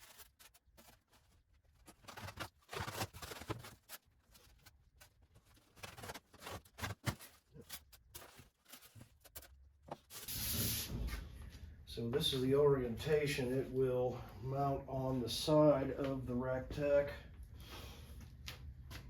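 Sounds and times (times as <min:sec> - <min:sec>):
packaging rustling: 0:00.0 - 0:10.4.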